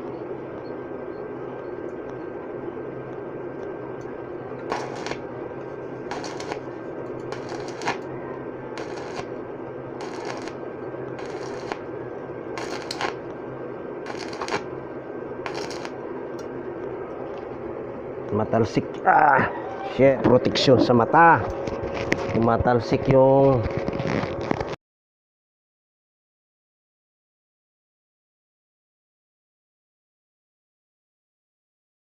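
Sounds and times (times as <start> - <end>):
welding arc crackling: 3.1 - 17.5.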